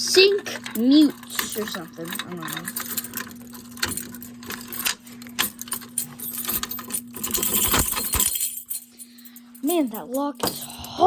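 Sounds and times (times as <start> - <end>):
knocks and handling: 0.5 - 8.9
keys jangling: 0.6 - 11.0.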